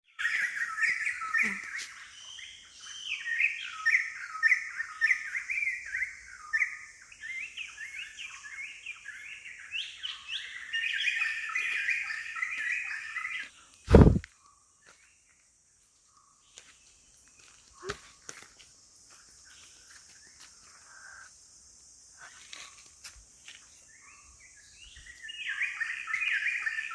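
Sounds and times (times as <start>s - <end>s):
birds chirping: 0.1s - 22.8s, 23.4s - 26.9s
loud thump: 13.9s - 14.2s.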